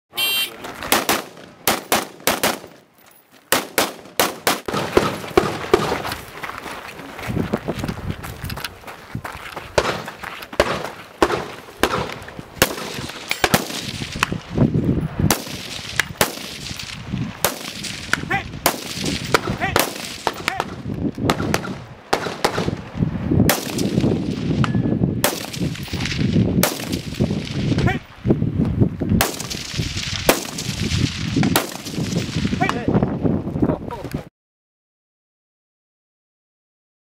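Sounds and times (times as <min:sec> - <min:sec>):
rifle shots: 0:00.9 - 0:02.8, 0:03.5 - 0:06.0, 0:09.8 - 0:14.3, 0:15.3 - 0:22.8, 0:23.5 - 0:24.6, 0:25.2 - 0:27.6, 0:29.2 - 0:32.5.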